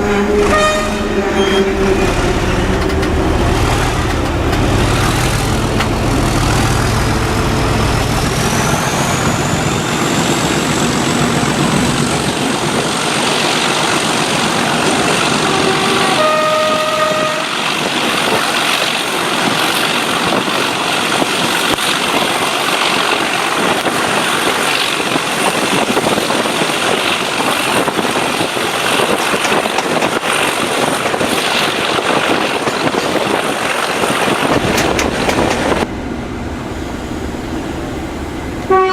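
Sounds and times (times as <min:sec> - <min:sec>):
short train horn note: 0:00.0 - 0:03.4, 0:15.4 - 0:17.6, 0:38.7 - 0:38.9
diesel locomotive engine working hard: 0:00.0 - 0:38.9
rushing of moving train: 0:00.0 - 0:38.9.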